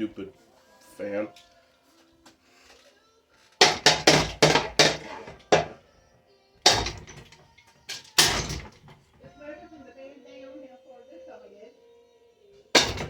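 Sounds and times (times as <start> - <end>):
ceiling fan being struck: 3.6 - 5.8, 6.7 - 8.9, 12.8 - 13.0.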